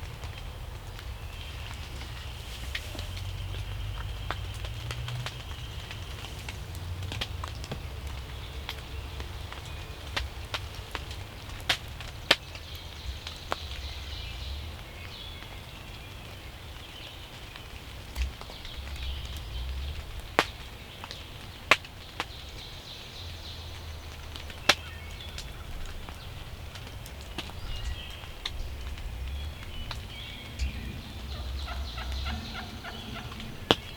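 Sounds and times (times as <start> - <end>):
songbirds chirping: 0.0 - 33.9
low steady rumble: 25.5 - 33.9.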